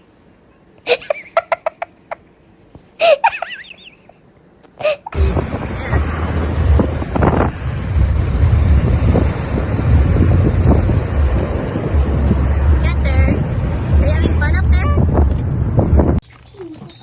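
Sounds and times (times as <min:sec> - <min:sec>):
laugh-like bursts: 0:00.9 - 0:02.3, 0:03.0 - 0:04.2, 0:04.8 - 0:05.2
wavering cries: 0:00.9 - 0:02.3, 0:03.0 - 0:04.2, 0:04.8 - 0:05.2
low rumble: 0:05.2 - 0:16.2
wind buffeting microphone: 0:05.2 - 0:16.2.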